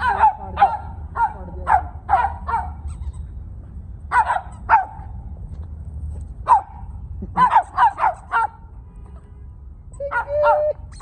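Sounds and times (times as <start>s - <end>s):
dog barking: 0.0s - 2.8s, 4.1s - 5.1s, 6.4s - 6.8s, 7.4s - 8.6s, 10.0s - 10.8s.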